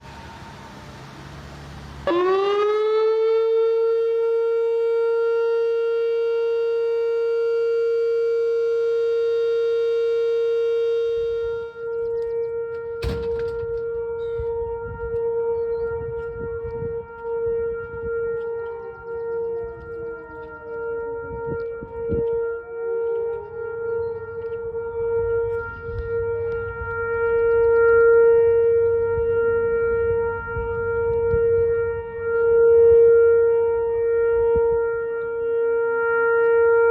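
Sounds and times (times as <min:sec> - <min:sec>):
electronic warning siren tone: 0:00.0 - 0:36.9
low rumble: 0:11.1 - 0:35.0.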